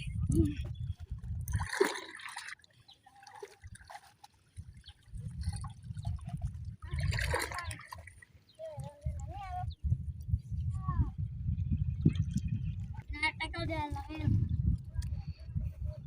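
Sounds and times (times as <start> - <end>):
water splashing and trickling: 0.0 - 15.4
low microphone rumble: 8.9 - 16.0.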